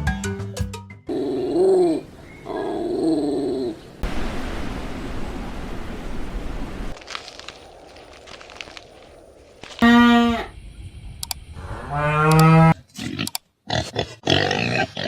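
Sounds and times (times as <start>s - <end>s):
steady hiss-like noise: 4.0s - 9.0s.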